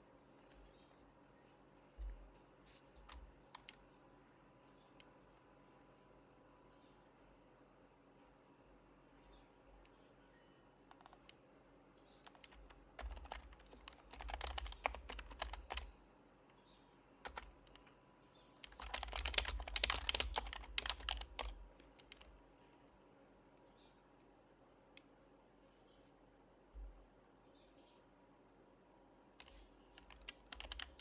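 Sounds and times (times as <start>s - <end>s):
typing on a keyboard: 3.0s - 3.8s, 10.9s - 11.4s, 12.2s - 15.9s, 17.2s - 17.9s, 18.6s - 22.4s, 29.4s - 31.0s.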